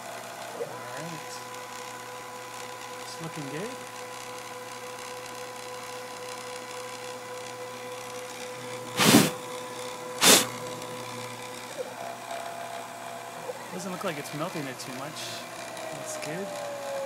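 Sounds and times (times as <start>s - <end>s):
cnc spindle cutting acrylic: 0.0s - 17.0s
short rushes of noise: 10.2s - 10.5s.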